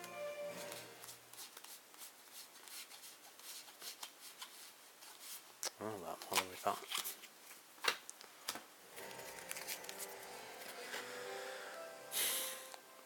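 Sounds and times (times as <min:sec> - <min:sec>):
faint music with held tones: 0:00.0 - 0:01.3, 0:08.9 - 0:13.0
cards clicking: 0:07.8 - 0:10.8
cards sliding: 0:09.0 - 0:11.1.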